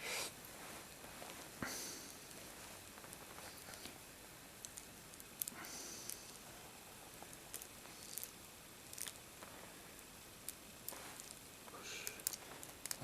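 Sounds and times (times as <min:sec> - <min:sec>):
fingers rustling on plastic: 0:10.4 - 0:11.4.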